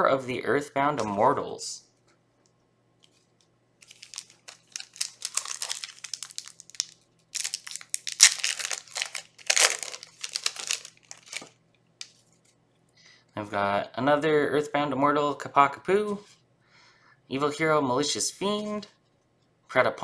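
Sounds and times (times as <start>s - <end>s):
foil wrapper crinkling and tearing: 3.8s - 12.2s.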